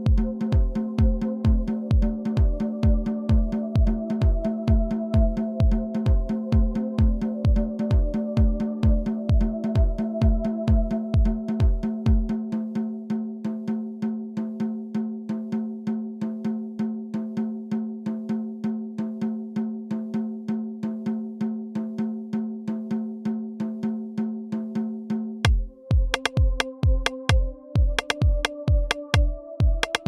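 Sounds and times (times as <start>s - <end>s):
deep kick drum: 0.0s - 12.4s, 25.4s - 30.0s
rapid percussion beat: 0.0s - 12.4s, 25.4s - 30.0s.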